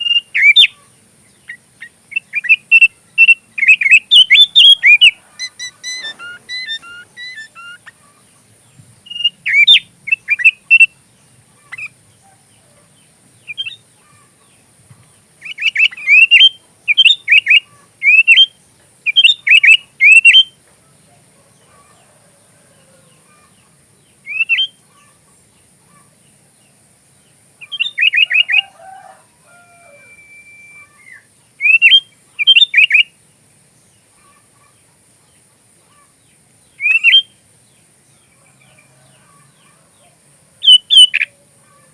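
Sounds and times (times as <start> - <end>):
bulbul chirping: 0.0 - 8.3, 9.0 - 11.0, 13.4 - 14.3, 15.4 - 20.6, 36.7 - 37.3, 40.6 - 41.3.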